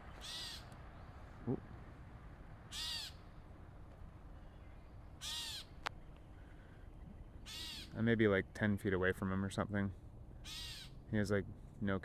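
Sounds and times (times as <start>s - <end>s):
catbird mew call: 0.2s - 0.7s, 2.7s - 3.2s, 5.2s - 5.7s, 7.4s - 7.9s, 10.4s - 10.9s.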